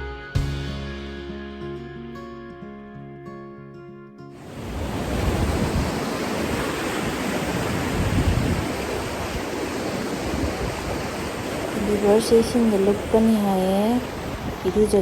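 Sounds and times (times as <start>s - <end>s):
waterfall roaring: 4.4s - 15.0s.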